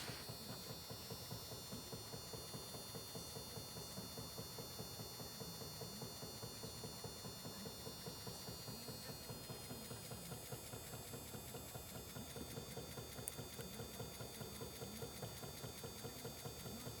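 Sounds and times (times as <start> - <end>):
faint high whine: 0.0 - 0.5
small motor rapid ticking: 1.8 - 17.0.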